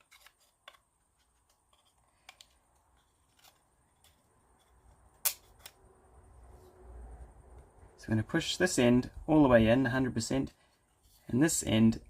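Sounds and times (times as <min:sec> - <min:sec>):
clicks of plywood pieces handled: 0:00.0 - 0:05.8.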